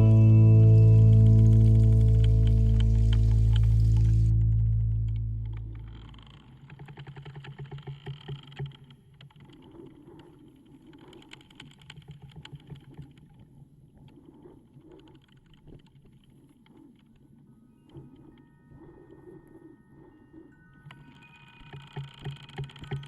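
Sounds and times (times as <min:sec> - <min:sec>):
background music: 0:00.0 - 0:05.8
machine humming and clicking: 0:00.0 - 0:13.4, 0:15.1 - 0:23.0.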